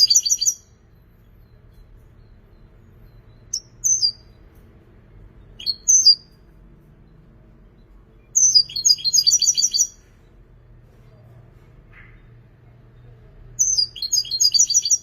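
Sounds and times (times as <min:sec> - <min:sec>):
goldfinch singing: 0:00.0 - 0:04.4, 0:05.4 - 0:06.4, 0:08.2 - 0:10.1, 0:13.6 - 0:15.0.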